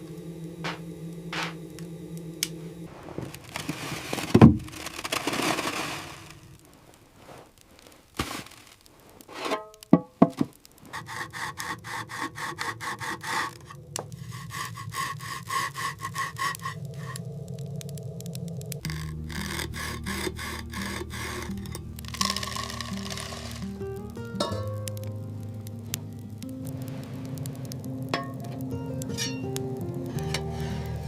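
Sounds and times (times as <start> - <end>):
heavy thump: 0.6 - 1.7
rhythmic rasping strokes: 10.8 - 31.0
faint music: 18.8 - 31.0.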